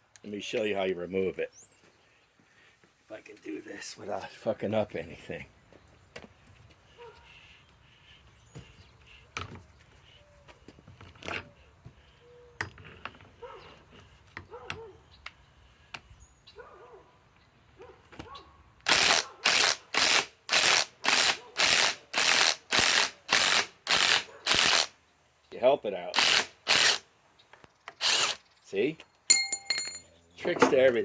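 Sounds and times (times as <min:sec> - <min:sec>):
impact wrench bursts: 0:18.9 - 0:25.0, 0:26.1 - 0:27.1, 0:28.0 - 0:28.4
handling clicks and knocks: 0:29.0 - 0:31.0.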